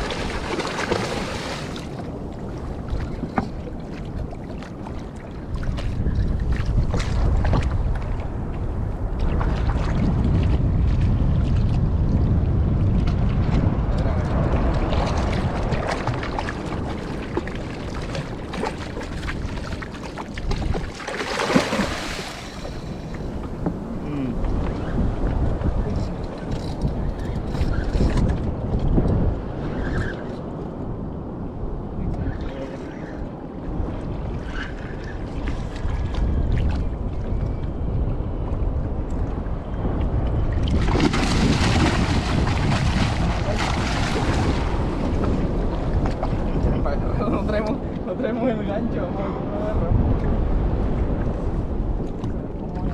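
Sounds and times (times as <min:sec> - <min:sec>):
sea water splashing against raft: 0:00.0 - 0:08.3, 0:14.4 - 0:24.0, 0:40.5 - 0:46.7
rush of water: 0:00.0 - 0:26.6, 0:32.0 - 0:52.9
wind rumbling on microphone: 0:00.0 - 0:52.9.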